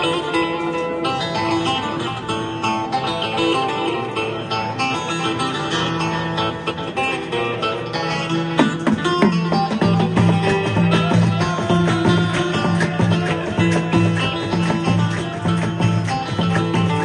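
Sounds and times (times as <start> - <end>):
plucked string instruments: 0.0 - 17.0.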